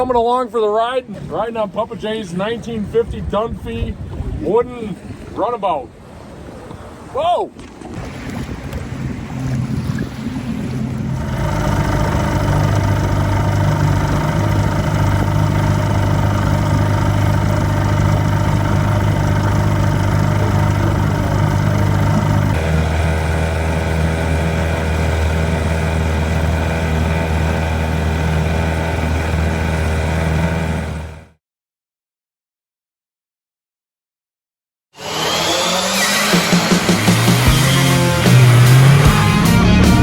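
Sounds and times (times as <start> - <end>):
outboard motor running: 7.7 - 31.4, 35.0 - 40.0.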